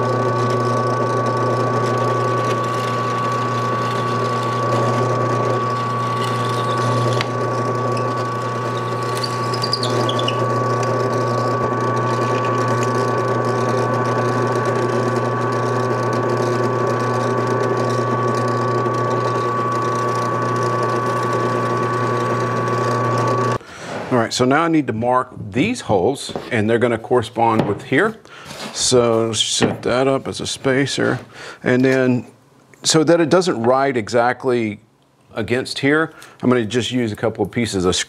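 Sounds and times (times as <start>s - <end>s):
shop machine whining: 0.0s - 24.4s.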